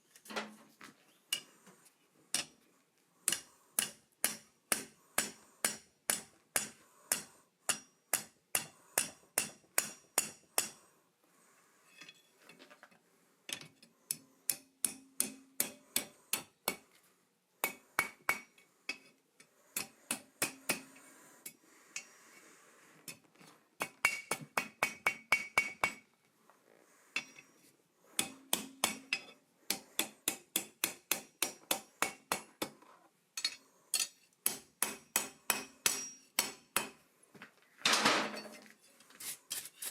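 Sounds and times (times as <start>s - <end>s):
hammer striking steel on anvil: 3.3s - 10.8s, 14.5s - 16.8s, 17.6s - 19.1s, 19.8s - 20.9s, 23.8s - 26.0s, 28.2s - 32.7s, 33.4s - 37.0s.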